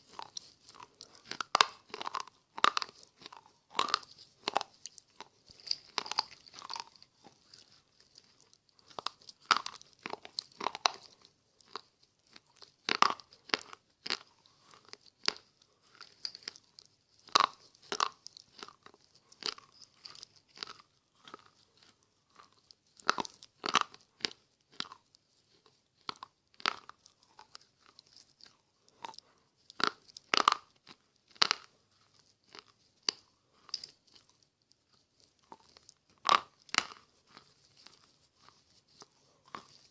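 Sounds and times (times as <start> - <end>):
slate pencils crunching: 0.0 - 25.0, 25.6 - 39.9.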